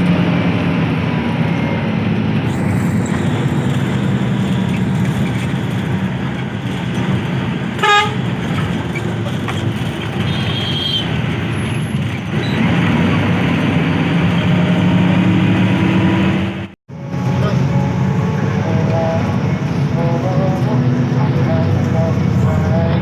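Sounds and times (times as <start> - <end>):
bus road and engine noise: 0.0 - 23.0
short horn toot: 7.8 - 8.2.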